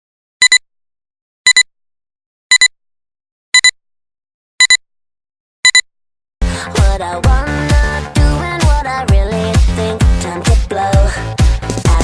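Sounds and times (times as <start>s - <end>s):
short high electronic beeps: 0.4s - 0.6s, 1.5s - 1.7s, 2.5s - 2.7s, 3.6s - 3.8s, 4.6s - 4.8s, 5.6s - 5.8s.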